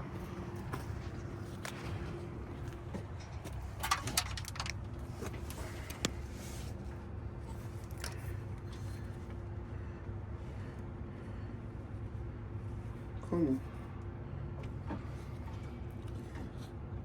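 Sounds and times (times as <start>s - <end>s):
small objects clinking: 3.7s - 6.1s.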